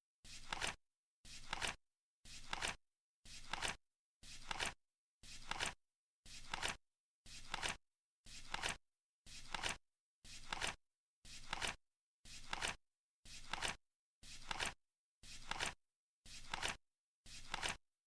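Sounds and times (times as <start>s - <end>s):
flip clock cards flapping: 0.4s - 0.8s, 2.4s - 2.8s, 5.4s - 5.8s, 6.4s - 6.8s, 10.4s - 10.8s, 17.4s - 17.8s.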